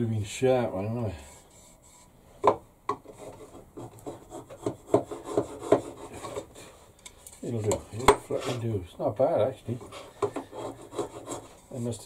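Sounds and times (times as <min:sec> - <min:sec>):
screwdriver scraping wood: 0:09.8 - 0:11.6.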